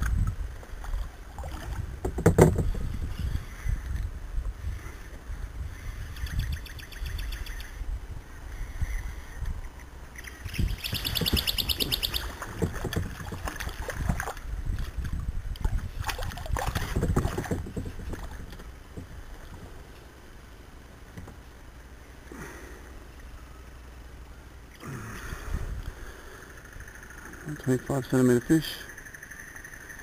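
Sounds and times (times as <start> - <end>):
knocks and rattles on kayak: 0.0 - 3.1, 10.8 - 19.8
water splashing: 0.8 - 1.9, 11.2 - 19.6.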